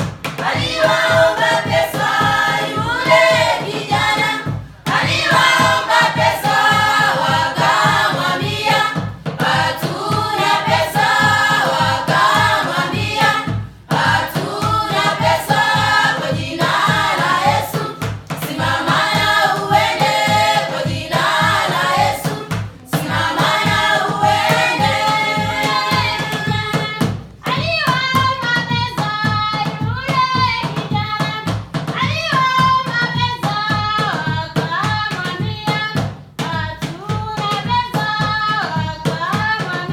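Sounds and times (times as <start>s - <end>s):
percussive beat: 0.0s - 39.9s
choir singing in harmony: 0.4s - 26.6s.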